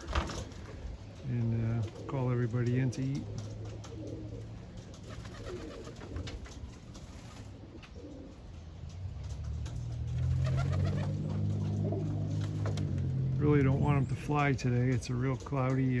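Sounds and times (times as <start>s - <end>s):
pigeons cooing: 0.0s - 16.0s.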